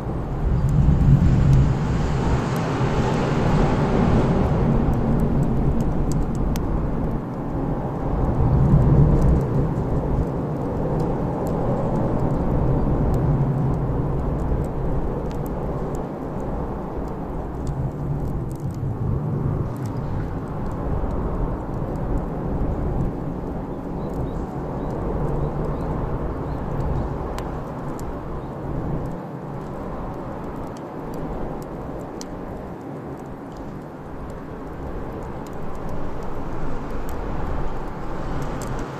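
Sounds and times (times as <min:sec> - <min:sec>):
bonfire crackling and popping: 0:00.0 - 0:38.9.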